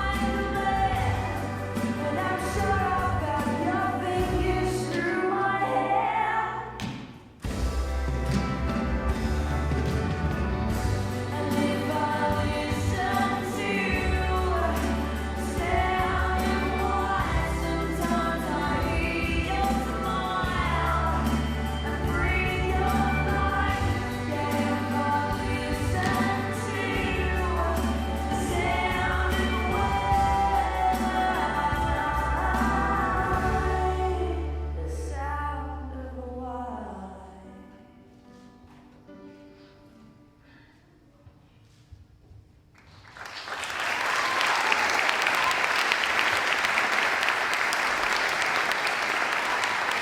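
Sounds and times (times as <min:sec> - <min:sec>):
steady bass: 0:00.0 - 0:04.9, 0:07.5 - 0:36.8
audience clapping: 0:42.7 - 0:50.0.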